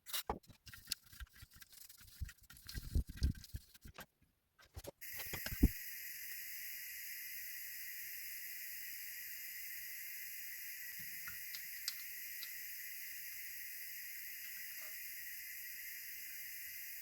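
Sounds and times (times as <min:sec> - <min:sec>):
steady hiss: 0:05.0 - 0:17.0.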